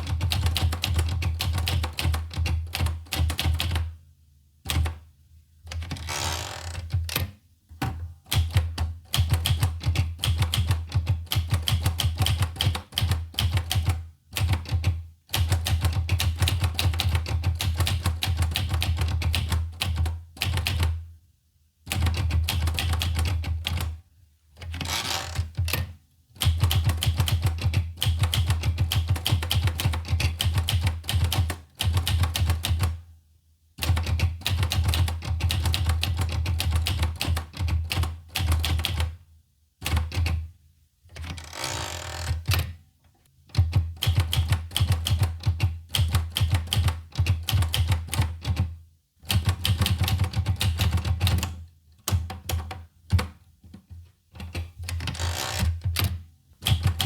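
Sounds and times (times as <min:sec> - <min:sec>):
typewriter key strikes: 0:08.3 - 0:20.8, 0:43.6 - 0:48.6, 0:55.0 - 0:57.0.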